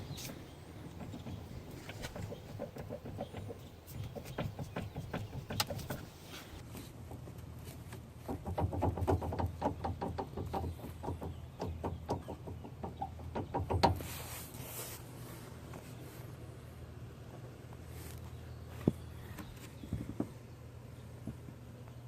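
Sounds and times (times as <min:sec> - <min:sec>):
steering clicking and knocking: 0:00.0 - 0:06.2, 0:08.3 - 0:14.0.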